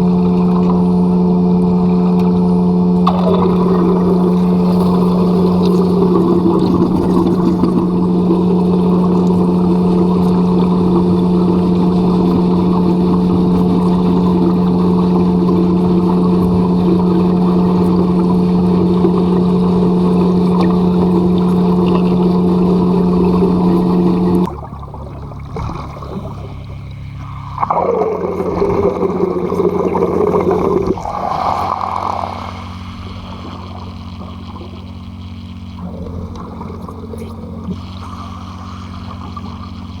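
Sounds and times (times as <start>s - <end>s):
loud low drone: 0.0s - 25.1s, 26.2s - 40.0s.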